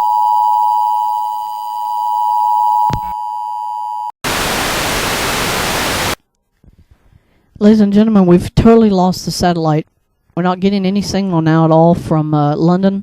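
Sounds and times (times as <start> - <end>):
loud white-noise static: 4.2 - 6.2
steady electronic tone: 4.2 - 6.2.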